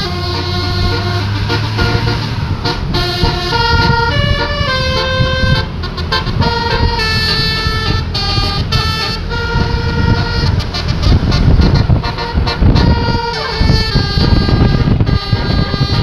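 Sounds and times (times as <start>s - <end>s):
bus engine rumble: 0.0s - 16.0s
multi-tone bus horn melody: 0.0s - 16.0s.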